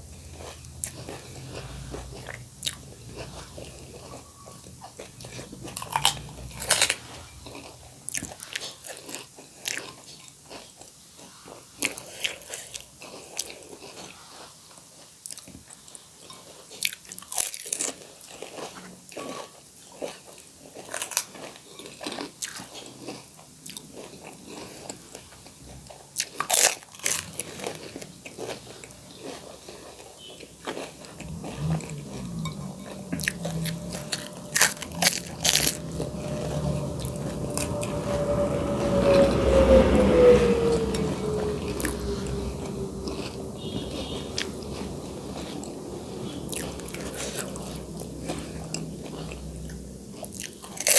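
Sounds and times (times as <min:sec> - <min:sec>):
chewing: 0:00.0 - 0:38.2, 0:40.8 - 0:50.9
loud sharp crunches: 0:33.4 - 0:35.8.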